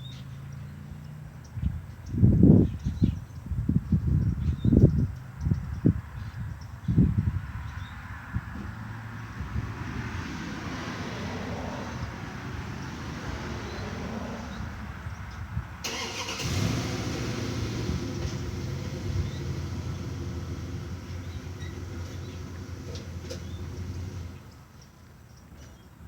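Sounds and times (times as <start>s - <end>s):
vehicle engine humming: 8.3s - 25.0s.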